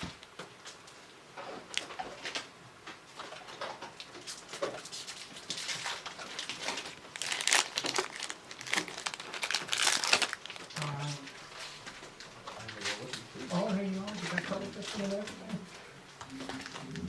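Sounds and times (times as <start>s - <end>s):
foil wrappers crinkling: 5.0s - 11.8s.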